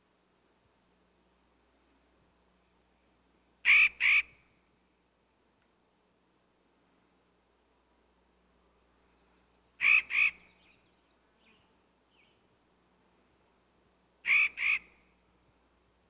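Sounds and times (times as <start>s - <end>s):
bird calling: 3.7s - 4.4s, 9.8s - 10.9s, 14.3s - 15.0s.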